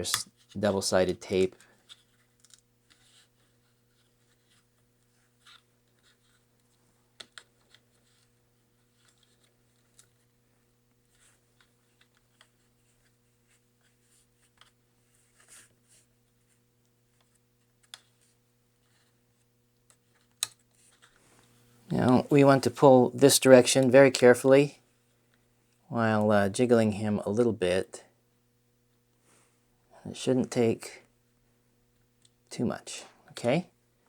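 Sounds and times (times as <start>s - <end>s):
low electrical hum: 0.0s - 34.0s
small clicks and scratches of tools: 1.5s - 10.4s, 11.1s - 19.2s, 19.8s - 21.6s.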